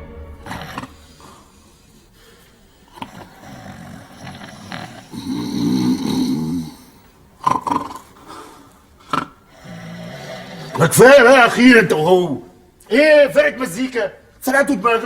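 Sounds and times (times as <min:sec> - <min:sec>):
sharp snorts: 0:00.4 - 0:10.8
men snoring: 0:00.4 - 0:10.9.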